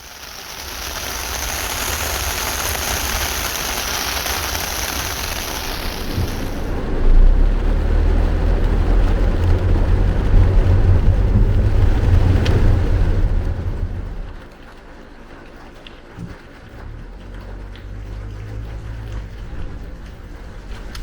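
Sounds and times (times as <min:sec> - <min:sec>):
hiss of rain and spray: 0:00.0 - 0:21.0
tyre and wind rumble: 0:04.5 - 0:14.5, 0:16.2 - 0:21.0.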